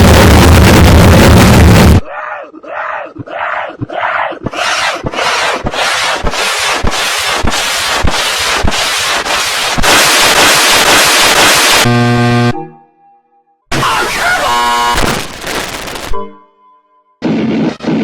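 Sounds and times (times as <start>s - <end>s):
harsh stuttering rushing noise: 0.0s - 2.0s, 4.5s - 12.5s, 13.7s - 16.1s, 17.2s - 18.0s
buzzy electronic tone: 6.6s - 12.7s, 13.7s - 16.2s.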